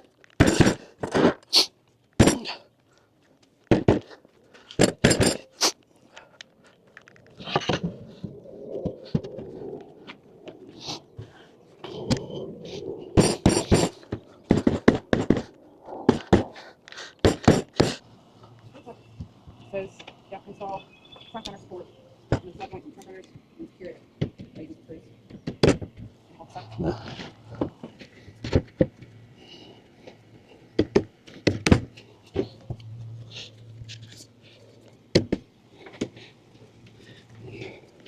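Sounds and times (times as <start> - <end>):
scraping: 3.7 - 20.8
parts knocked into place: 4.8 - 5.7.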